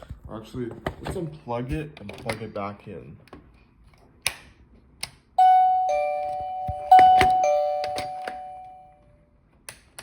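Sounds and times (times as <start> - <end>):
electronic ding-dong doorbell chime: 5.4 - 9.2.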